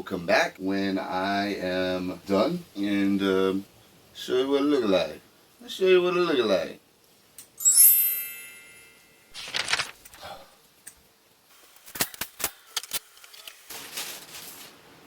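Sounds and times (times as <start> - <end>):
bright metallic ding: 7.6 - 9.3
short rustle: 13.5 - 15.0.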